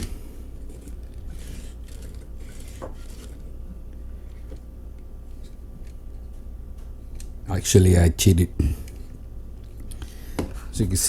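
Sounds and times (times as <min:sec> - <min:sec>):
small objects clicking and rubbing: 0:00.0 - 0:03.5.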